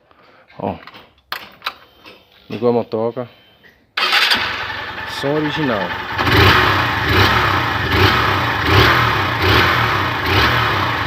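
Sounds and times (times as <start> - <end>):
motorcycle engine revving: 4.0 - 11.0.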